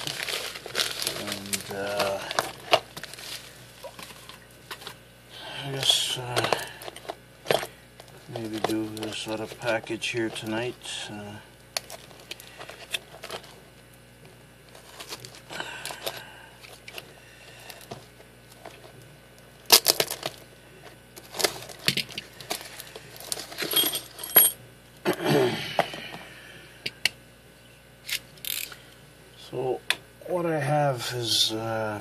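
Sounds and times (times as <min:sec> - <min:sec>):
packaging rustling and tearing: 0:00.0 - 0:05.0, 0:05.7 - 0:10.8, 0:14.7 - 0:17.1, 0:19.7 - 0:20.5, 0:21.2 - 0:23.8.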